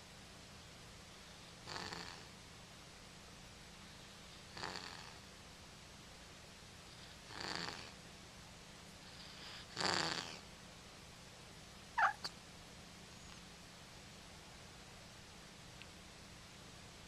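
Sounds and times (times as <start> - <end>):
cat snoring: 1.6 - 2.3, 4.4 - 5.2, 6.9 - 8.0, 9.1 - 10.4, 12.0 - 12.3
click: 15.8 - 16.0.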